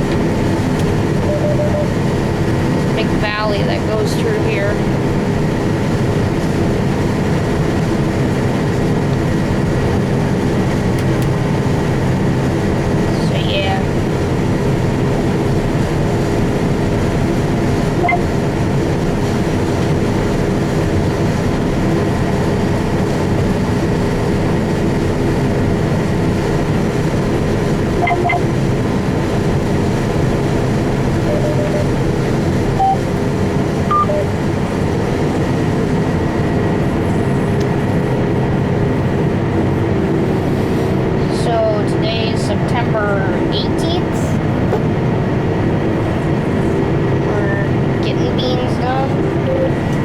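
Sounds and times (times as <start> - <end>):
combine harvester droning: 0.0 - 50.0
faint beeps: 1.2 - 1.9, 18.0 - 18.3, 28.0 - 28.5, 31.2 - 31.9, 32.8 - 33.0, 33.9 - 34.3, 49.3 - 49.8.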